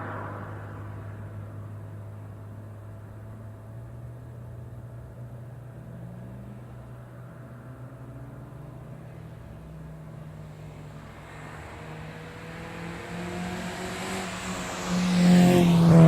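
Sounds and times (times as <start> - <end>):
car engine accelerating: 8.7 - 16.0.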